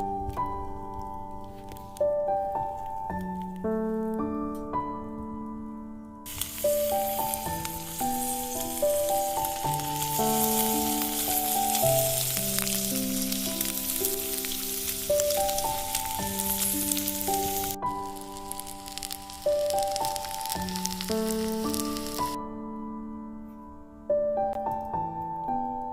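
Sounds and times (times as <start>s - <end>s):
instrumental music: 0.0s - 25.9s
bacon sizzling: 6.3s - 22.4s.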